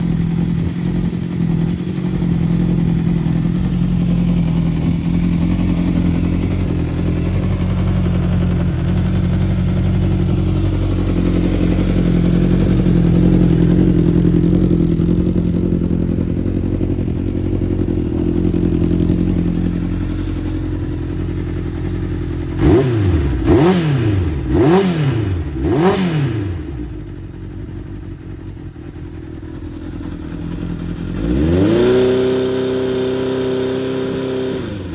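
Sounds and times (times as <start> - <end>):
motorcycle engine idling and revving: 0.0 - 34.9.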